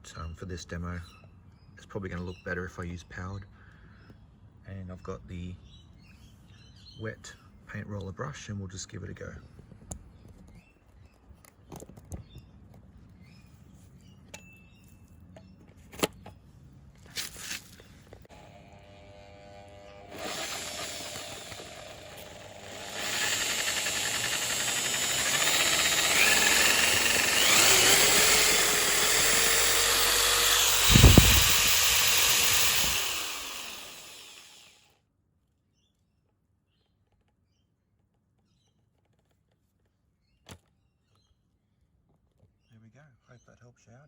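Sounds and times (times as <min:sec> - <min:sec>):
power drill spinning: 0:18.2 - 0:34.9.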